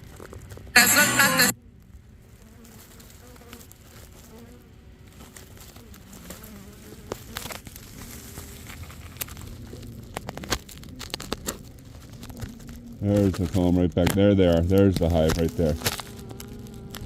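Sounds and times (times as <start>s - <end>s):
bees buzzing: 15.9s - 17.0s.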